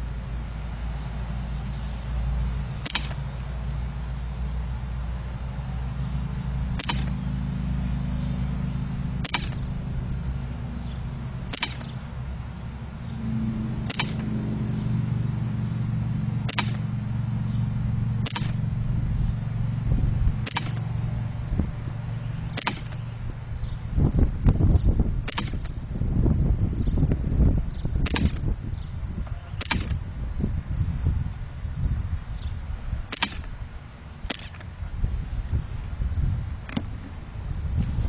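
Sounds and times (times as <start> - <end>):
steady low hum: 0.0 - 38.0
airsoft pistol shots: 2.8 - 3.2, 6.7 - 7.2, 9.2 - 9.8, 11.4 - 12.0, 13.8 - 14.4, 16.4 - 16.9, 18.2 - 18.7, 20.4 - 20.9, 22.5 - 23.1, 25.3 - 25.8, 28.0 - 28.5, 29.5 - 30.0, 33.1 - 33.6, 34.2 - 34.7.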